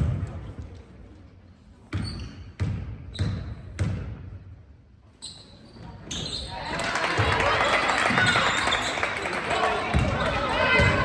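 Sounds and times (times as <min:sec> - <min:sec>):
basketball bouncing on gym floor: 0:00.0 - 0:00.5, 0:01.9 - 0:04.4.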